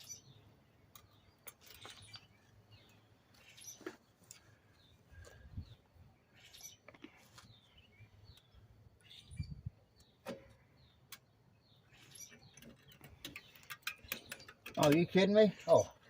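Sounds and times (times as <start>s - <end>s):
birds chirping: 0.0s - 16.0s
clicks of metal parts handled: 12.6s - 15.2s.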